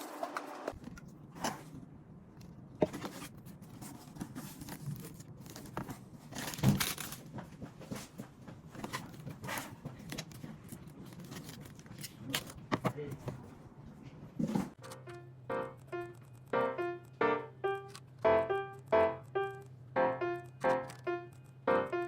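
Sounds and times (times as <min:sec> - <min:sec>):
rustling crinkling handling: 0:02.5 - 0:14.3.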